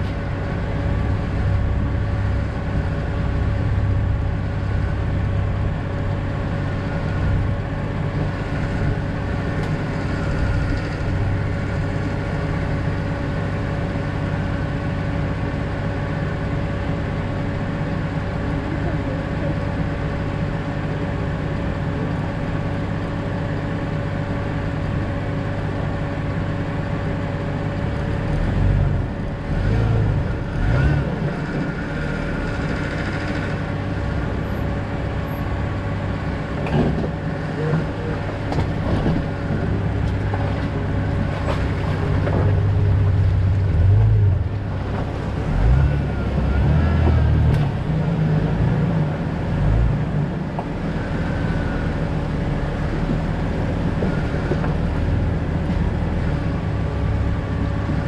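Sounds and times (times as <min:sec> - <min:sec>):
car engine and road noise: 0:00.0 - 0:58.0.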